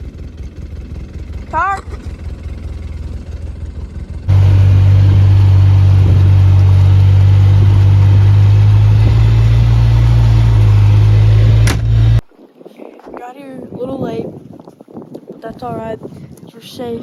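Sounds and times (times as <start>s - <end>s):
vehicle engine running: 0.0s - 12.2s.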